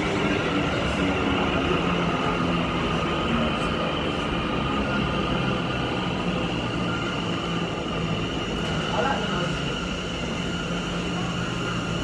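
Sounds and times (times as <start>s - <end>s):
train rumbling on tracks: 0.0s - 12.0s.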